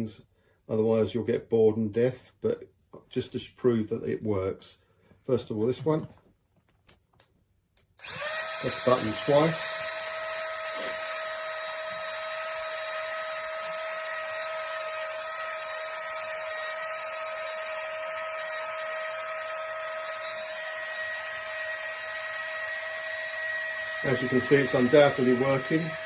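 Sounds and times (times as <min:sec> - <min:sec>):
electric air pump whining: 0:08.0 - 0:26.0.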